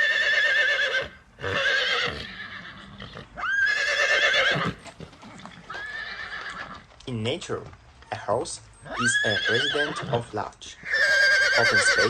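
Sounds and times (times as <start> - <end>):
horse whinnying: 0.0 - 6.9, 8.9 - 12.0.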